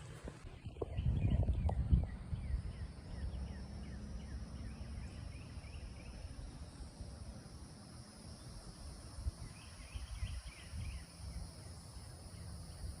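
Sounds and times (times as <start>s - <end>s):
low rumble: 0.0s - 5.0s.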